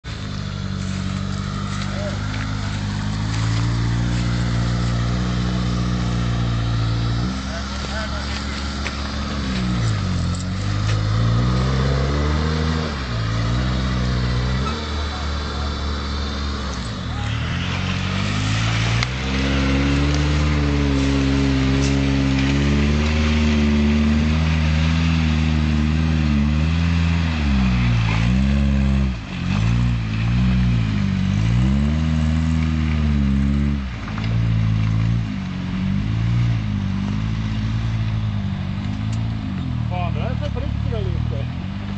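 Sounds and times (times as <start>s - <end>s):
vehicle engine under load: 0.0s - 41.9s.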